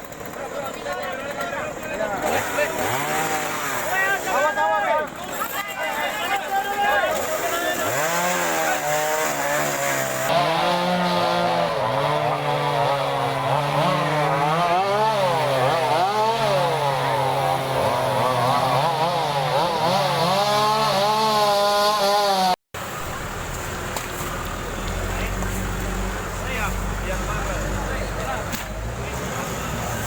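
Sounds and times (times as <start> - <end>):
chainsaws cutting wood: 0.0 - 30.0
low steady engine rumble: 22.8 - 30.0.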